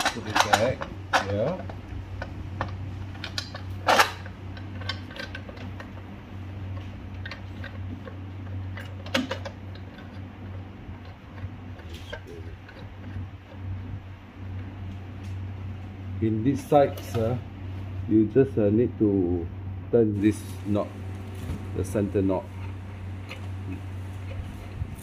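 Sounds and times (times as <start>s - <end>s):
grinder parts clicking and knocking: 0.0s - 13.9s
steady low hum: 0.0s - 25.0s.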